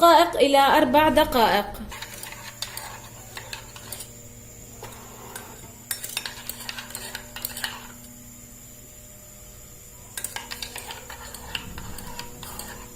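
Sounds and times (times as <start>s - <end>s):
spoon stirring in a pot: 1.3s - 8.2s, 10.0s - 12.9s
spoon clinking against pot: 5.9s - 7.9s, 10.2s - 12.9s.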